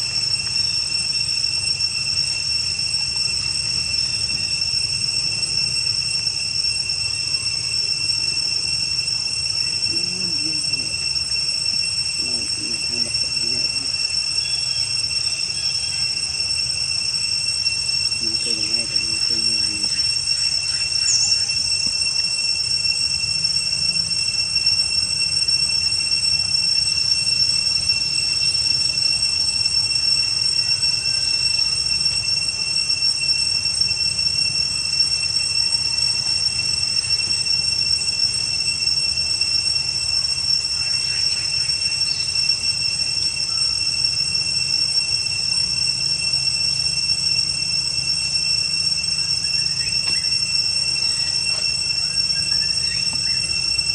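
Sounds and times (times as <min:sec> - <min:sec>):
insect chorus: 0:00.0 - 0:53.9.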